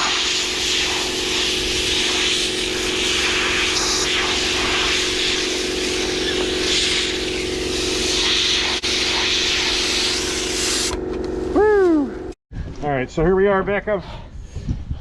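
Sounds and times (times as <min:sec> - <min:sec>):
compressed air hissing from nozzle: 0:00.0 - 0:11.0
steady machine hum: 0:00.0 - 0:12.4.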